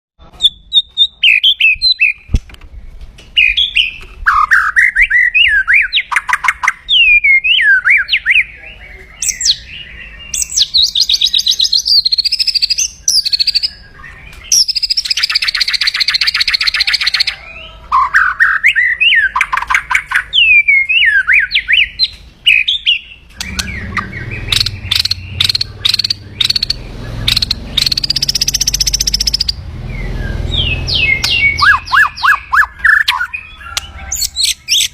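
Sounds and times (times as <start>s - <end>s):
bird singing whistled notes: 0.3s - 34.9s
harsh rattling bird trills: 14.5s - 18.6s, 21.4s - 34.9s.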